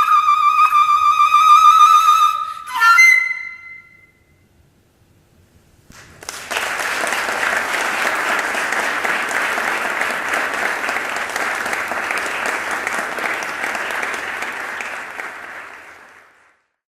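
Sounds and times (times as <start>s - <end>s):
audience applauding: 5.9s - 16.7s.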